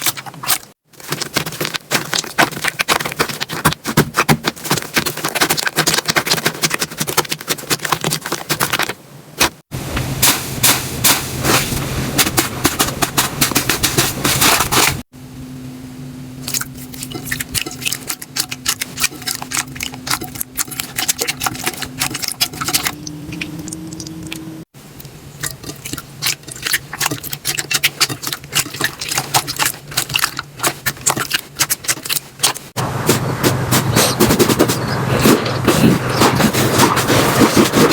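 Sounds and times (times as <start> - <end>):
low hum: 15.1 - 26.2.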